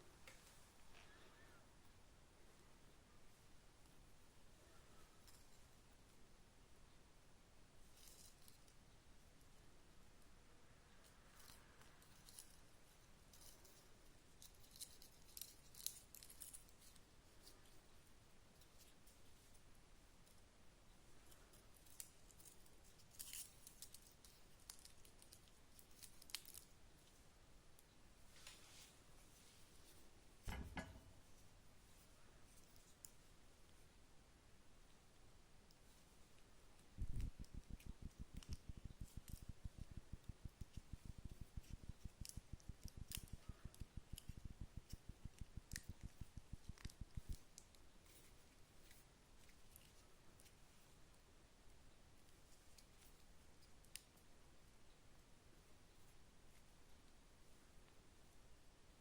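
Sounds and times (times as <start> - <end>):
small parts clicking: 21.2 - 26.7, 37.0 - 50.5.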